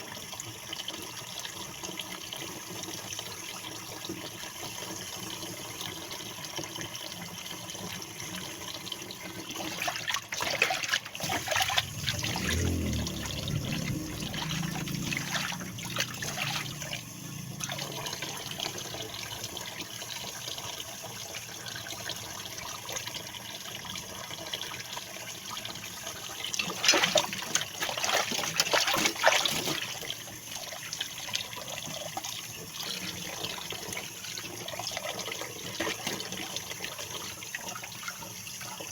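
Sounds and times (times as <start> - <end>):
water splashing: 9.7 - 19.0, 26.6 - 30.0
tap water running into sink: 13.6 - 38.9.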